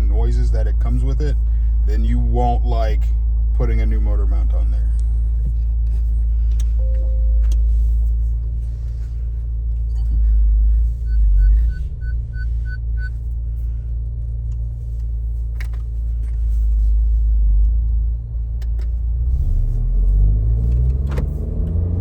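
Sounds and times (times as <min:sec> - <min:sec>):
car engine drone: 0:00.0 - 0:22.0
road rumble: 0:00.0 - 0:22.0
turn signal ticking: 0:06.5 - 0:08.6, 0:09.4 - 0:16.4.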